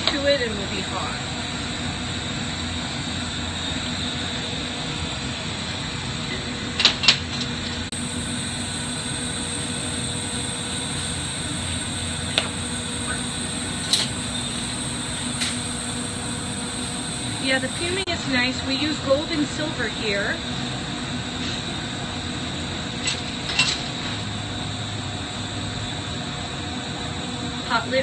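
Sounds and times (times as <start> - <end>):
torches and ventilation hissing: 7.9 - 18.2.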